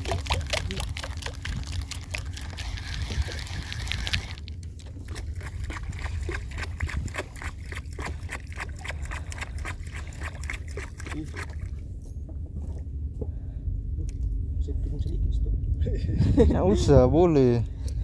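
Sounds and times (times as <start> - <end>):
wind rumble on microphone: 0.0 - 8.3, 11.1 - 18.0
water sloshing and splashing: 0.0 - 13.0.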